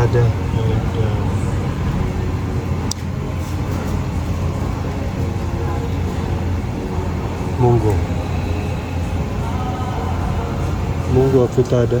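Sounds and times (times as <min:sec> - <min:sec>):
low mechanical drone: 0:00.0 - 0:12.0.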